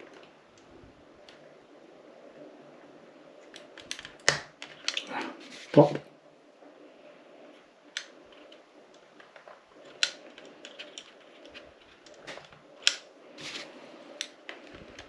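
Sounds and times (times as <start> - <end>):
faint steady hum: 0.0 - 15.0
small metal and plastic parts clicking: 7.9 - 13.0.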